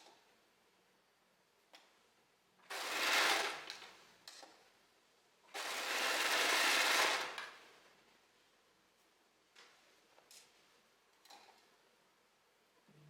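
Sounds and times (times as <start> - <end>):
overlocker stitching: 2.7 - 3.9, 5.5 - 7.6.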